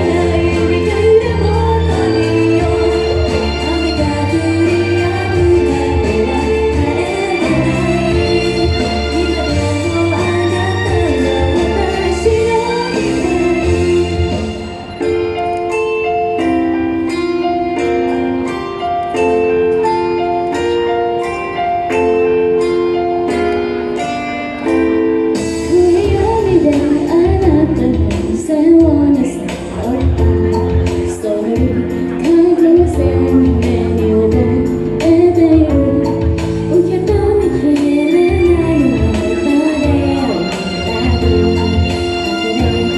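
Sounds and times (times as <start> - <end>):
woman singing: 0.0 - 15.0, 25.5 - 42.9
upbeat pop music: 0.0 - 42.9.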